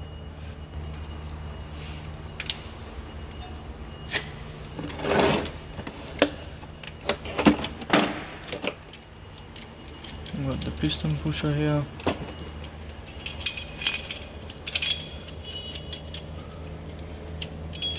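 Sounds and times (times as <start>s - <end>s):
steady low hum: 0.0s - 17.9s.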